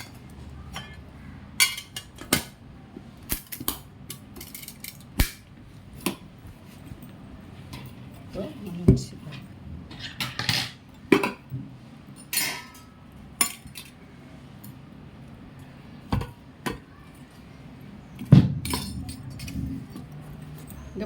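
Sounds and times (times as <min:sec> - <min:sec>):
dishes and utensils clinking: 0:00.0 - 0:02.6, 0:07.7 - 0:14.0, 0:18.2 - 0:20.9.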